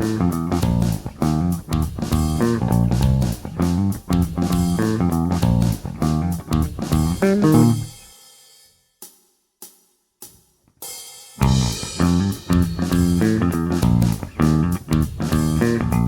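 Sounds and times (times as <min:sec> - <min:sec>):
electric bass notes: 0:00.0 - 0:08.0, 0:11.4 - 0:16.0.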